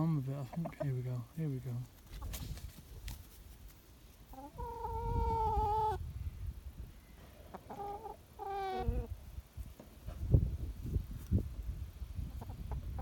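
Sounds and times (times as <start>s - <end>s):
chickens calling: 0.0s - 1.2s, 4.1s - 6.1s, 6.8s - 9.4s, 12.2s - 13.0s.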